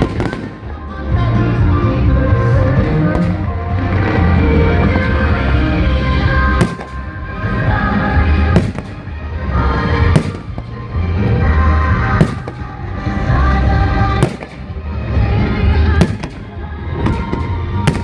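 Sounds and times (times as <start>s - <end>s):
firework bangs: 0.0s - 0.8s, 6.3s - 18.0s
loud music with steady beat: 0.0s - 18.0s.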